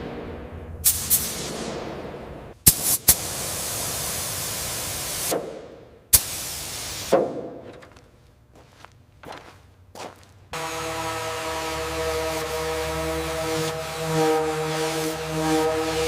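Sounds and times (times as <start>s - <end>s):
spraying hiss: 0.8s - 1.7s, 2.6s - 5.4s, 6.1s - 7.2s.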